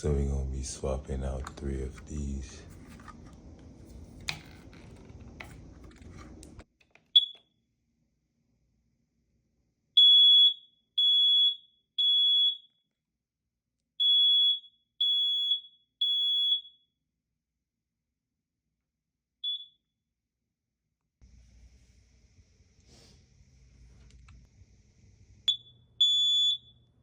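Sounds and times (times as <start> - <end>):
smoke detector beeping: 7.2 - 7.4, 10.0 - 12.7, 14.0 - 16.7, 19.4 - 19.8, 25.4 - 27.0.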